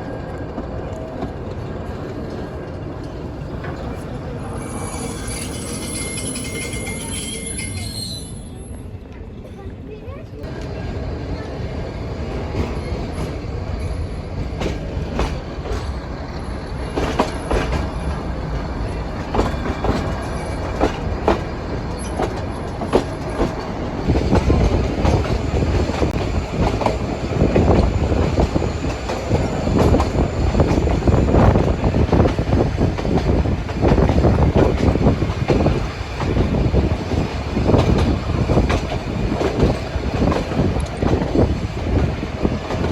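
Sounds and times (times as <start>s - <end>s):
train wheels clicking on rail joints: 12.2s - 42.9s.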